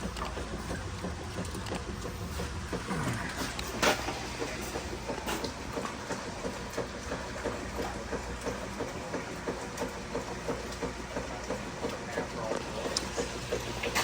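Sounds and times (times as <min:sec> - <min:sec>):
dishwasher drain pump humming: 0:00.0 - 0:14.0.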